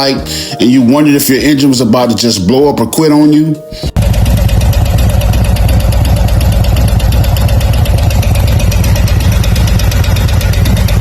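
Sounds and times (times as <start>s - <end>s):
fast even engine ticking: 4.0s - 11.0s
motorcycle engine idling: 4.0s - 11.0s.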